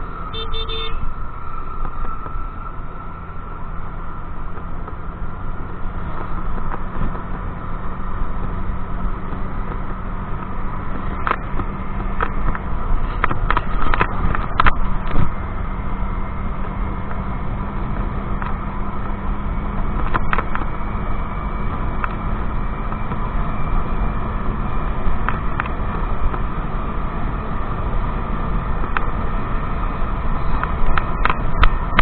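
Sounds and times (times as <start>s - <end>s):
road noise: 0.0s - 32.0s
wind rushing over microphone: 1.0s - 32.0s.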